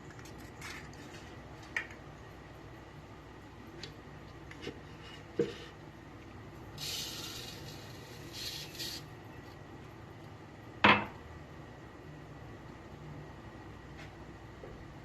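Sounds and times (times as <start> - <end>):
soft hissing: 6.8 - 9.2.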